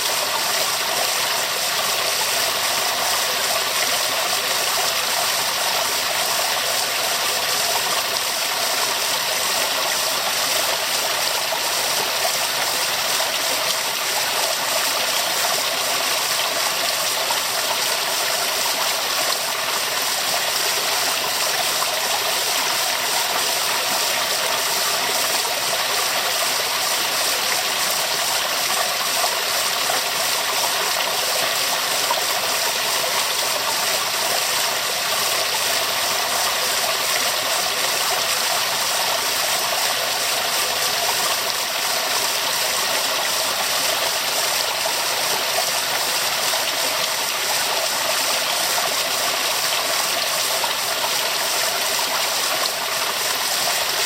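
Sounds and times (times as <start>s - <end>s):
waterfall rushing: 4.4s - 54.0s.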